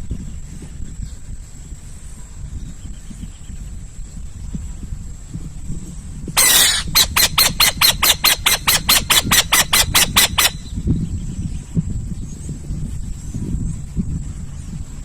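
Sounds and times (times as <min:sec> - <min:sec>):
owl screeching: 0:06.4 - 0:10.7.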